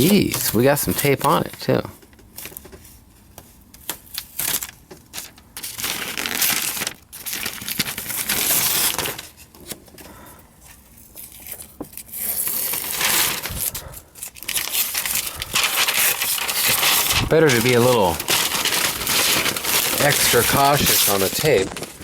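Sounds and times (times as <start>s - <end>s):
paper rustling and crumpling: 0.0s - 10.0s, 10.7s - 22.0s
clicks and crinkles: 10.7s - 22.0s
masking tape peeling: 11.2s - 22.0s.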